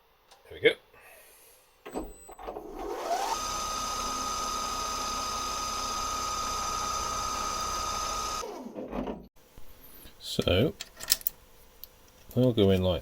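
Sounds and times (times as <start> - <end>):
lathe motor spinning: 2.6 - 8.7.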